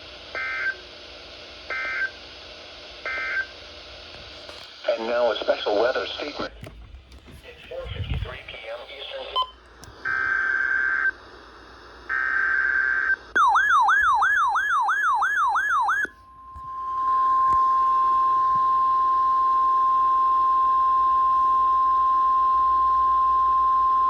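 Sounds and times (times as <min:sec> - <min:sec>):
steady alarm tone: 0:12.1 - 0:18.9
warbling siren tone: 0:12.8 - 0:18.4.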